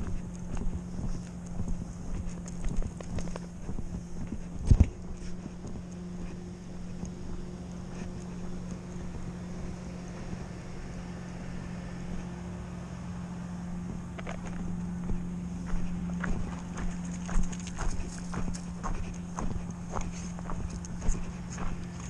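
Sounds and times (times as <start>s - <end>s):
engine drone: 0.0s - 22.0s
footsteps crunching dry leaves: 0.0s - 22.0s.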